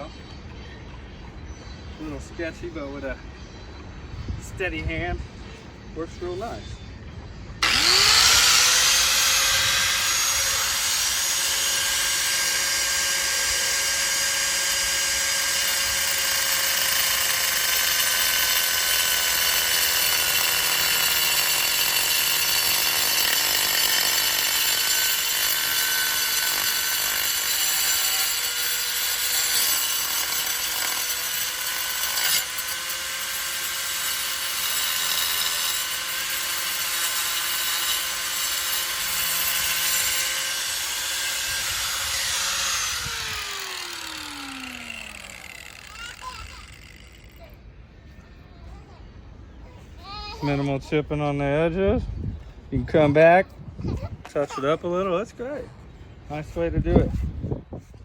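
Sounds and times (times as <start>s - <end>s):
power cutter grinding tile: 7.6s - 47.0s.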